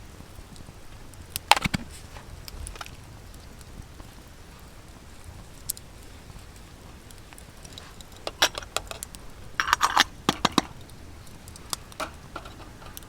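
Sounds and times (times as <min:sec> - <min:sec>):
small hard objects clicking: 0:05.4 - 0:13.0.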